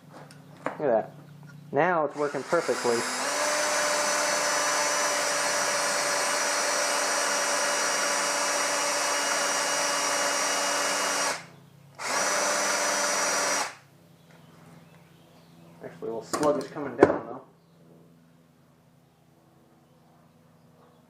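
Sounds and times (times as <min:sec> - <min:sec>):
power drill whining: 0:02.1 - 0:13.8.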